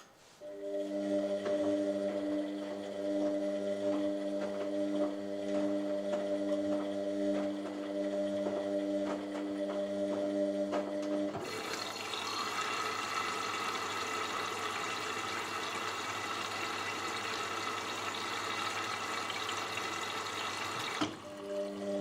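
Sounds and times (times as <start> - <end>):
washing machine hum: 0.0 - 22.0
water rushing through machine: 11.3 - 22.0.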